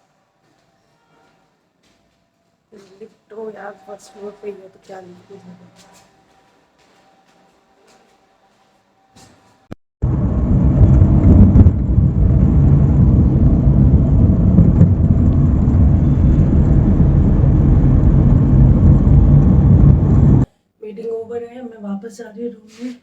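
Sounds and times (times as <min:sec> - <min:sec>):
vehicle engine and road noise: 0:10.0 - 0:20.5.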